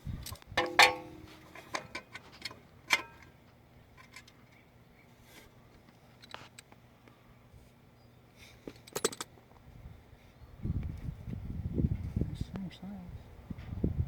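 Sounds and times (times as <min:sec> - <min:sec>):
tools clinking against metal: 0:00.3 - 0:03.3, 0:08.7 - 0:09.3
ringing metal clink: 0:00.6 - 0:01.4.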